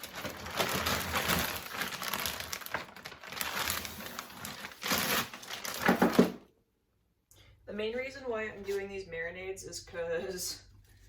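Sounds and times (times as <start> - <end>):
plastic bag crinkling: 0.0 - 6.4.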